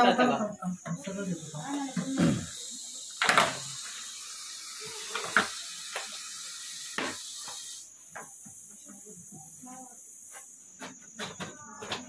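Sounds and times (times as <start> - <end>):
snake hissing: 1.1 - 8.7.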